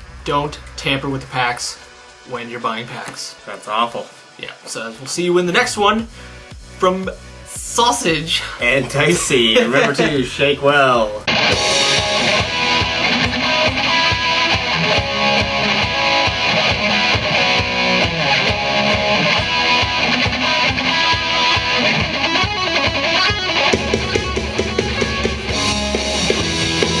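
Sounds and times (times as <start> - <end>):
loud rock music: 5.8 - 27.0.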